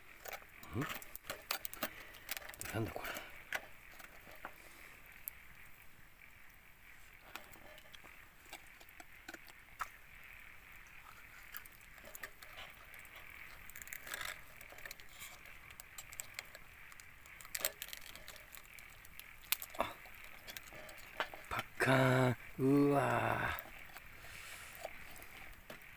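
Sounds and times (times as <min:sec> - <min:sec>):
fire crackles and pops: 0:00.0 - 0:25.9
oysters sizzling on fire: 0:00.0 - 0:25.9.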